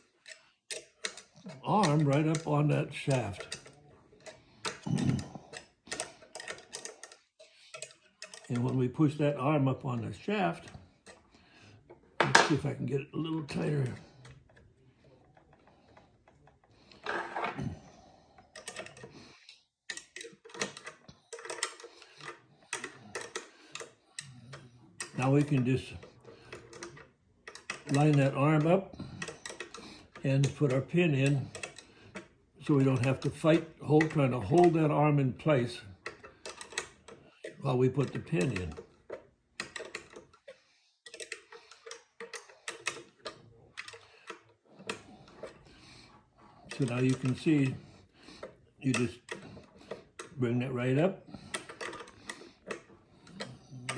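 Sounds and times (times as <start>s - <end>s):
small metal parts clicking: 0.0s - 8.8s, 15.2s - 34.9s, 35.5s - 53.9s
wrench clicking on nut: 36.0s - 45.5s.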